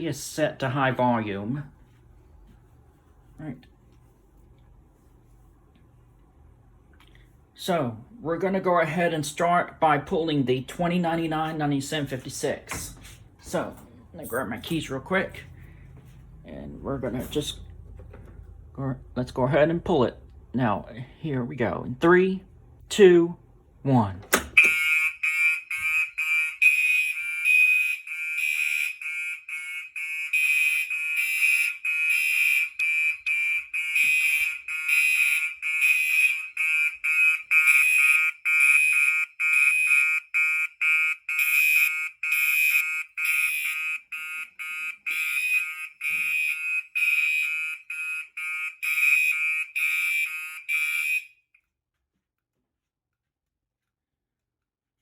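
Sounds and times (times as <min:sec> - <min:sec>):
fire alarm horns pulsing: 0:24.6 - 0:51.5.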